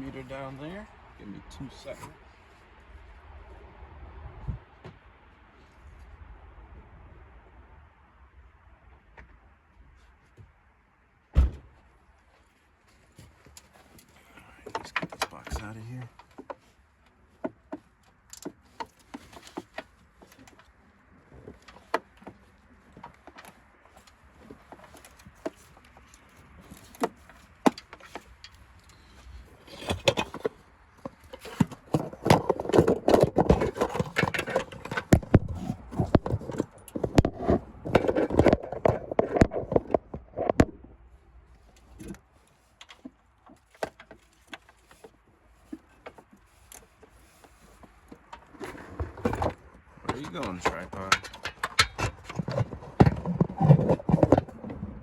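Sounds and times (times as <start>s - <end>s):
plastic box rattling and clattering: 29.6s - 40.8s, 42.9s - 55.0s
clicks and knocks: 29.7s - 40.9s.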